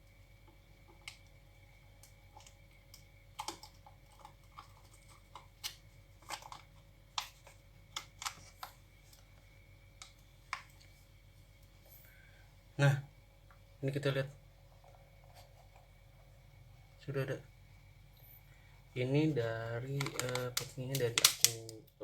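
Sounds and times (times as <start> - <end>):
plastic packaging crackling: 19.9 - 21.9.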